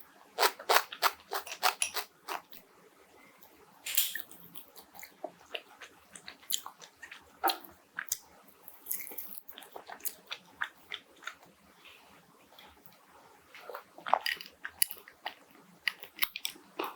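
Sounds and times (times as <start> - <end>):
person chewing crispy chicken: 4.3 - 12.0, 13.6 - 16.9.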